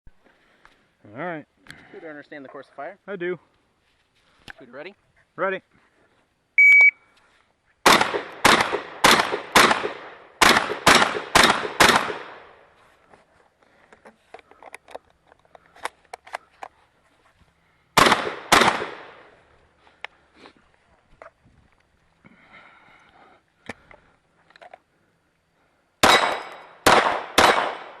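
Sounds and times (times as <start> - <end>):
shot timer beep: 6.6 - 7.0
gunshots: 7.8 - 12.5, 18.0 - 19.3, 26.0 - 28.0.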